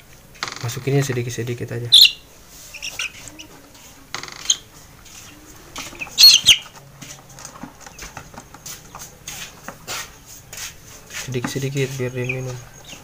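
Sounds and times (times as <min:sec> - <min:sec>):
chicken squawking: 0:01.9 - 0:03.6, 0:04.4 - 0:06.7.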